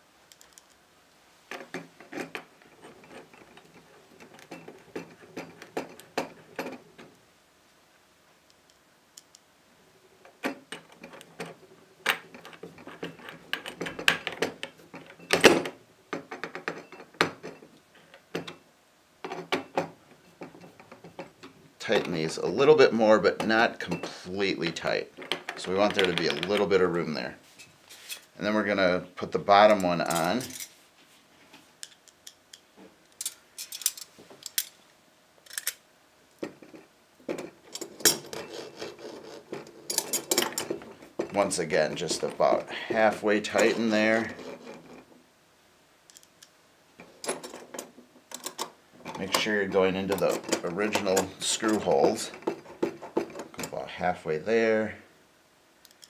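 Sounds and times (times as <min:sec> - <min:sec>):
metal latch clicks and clinks: 0:35.4 - 0:35.8, 0:39.5 - 0:41.4, 0:46.1 - 0:49.5.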